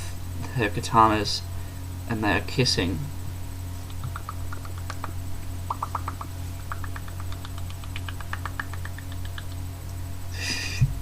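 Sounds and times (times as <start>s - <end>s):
mains hum: 0.0s - 11.0s
lips making kissing smacks: 3.8s - 9.7s.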